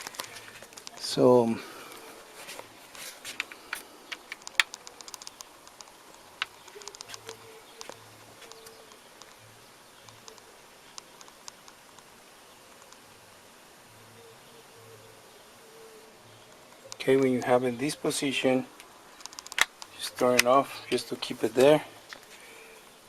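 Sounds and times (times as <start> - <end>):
plastic parts clicking and tapping: 3.3 - 9.3, 19.2 - 20.6.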